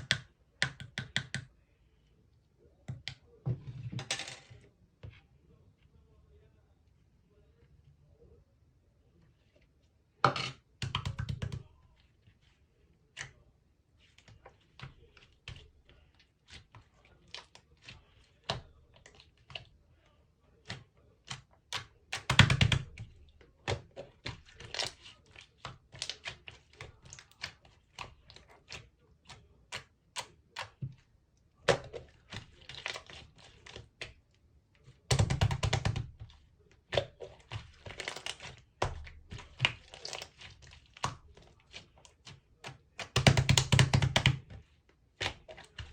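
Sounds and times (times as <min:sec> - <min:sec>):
slime clicking and squelching: 0:20.5 - 0:45.9.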